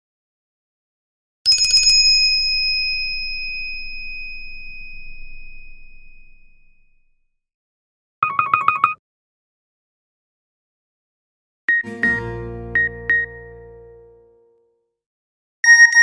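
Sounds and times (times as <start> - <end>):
ringtone bell rattle and tone: 8.2 - 9.0, 12.8 - 13.6.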